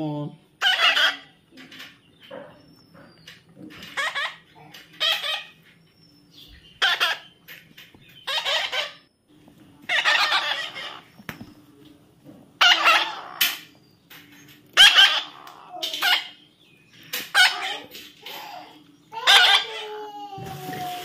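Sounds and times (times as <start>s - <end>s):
parrot squawking: 0.6s - 1.4s, 3.8s - 5.6s, 6.6s - 7.4s, 8.2s - 9.0s, 9.9s - 11.1s, 12.6s - 13.7s, 14.7s - 16.4s, 17.2s - 20.8s.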